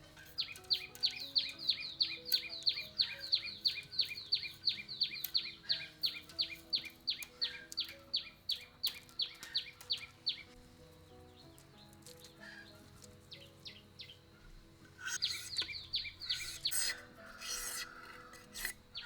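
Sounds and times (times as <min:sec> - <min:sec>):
bird calling sharp notes: 0:00.0 - 0:10.6, 0:14.9 - 0:19.0
soft background music: 0:00.0 - 0:19.0.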